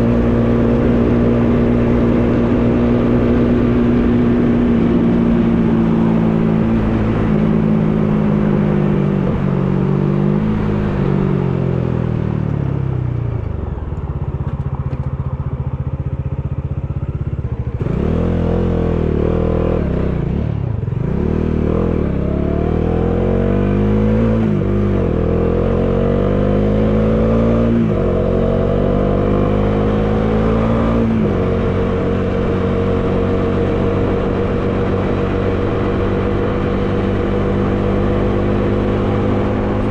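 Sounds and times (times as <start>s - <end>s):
wind noise: 0.0s - 13.7s, 23.5s - 39.9s
motorcycle engine: 0.0s - 39.9s.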